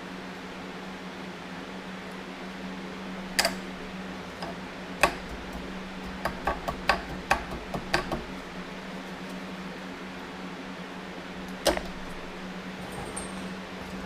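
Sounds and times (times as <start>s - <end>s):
steady low hum: 0.0s - 14.0s
tools clicking on a workbench: 4.4s - 8.2s.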